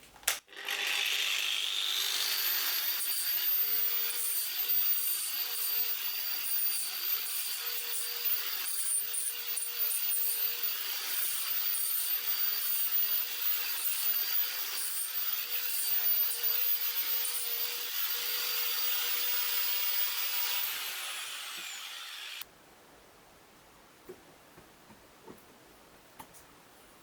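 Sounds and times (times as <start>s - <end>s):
power tool whining: 0.5s - 22.4s.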